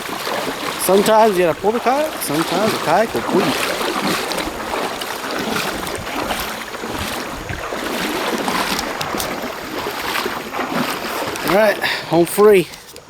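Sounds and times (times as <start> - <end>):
river water rushing: 0.0 - 13.0
splashing from wading: 0.0 - 13.0.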